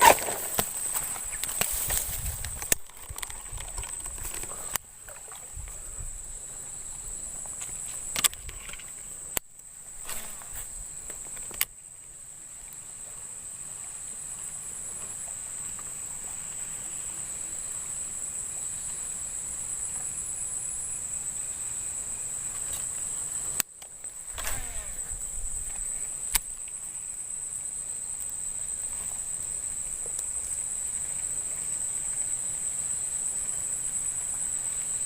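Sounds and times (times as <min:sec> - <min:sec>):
insects droning: 0:00.0 - 0:35.0
sharp clicks: 0:23.6 - 0:25.1, 0:26.3 - 0:26.7.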